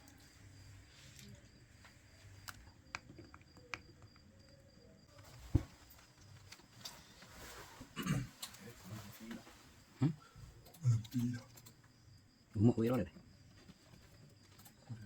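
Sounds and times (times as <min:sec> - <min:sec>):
small tools clicking and tapping: 0:10.6 - 0:12.0.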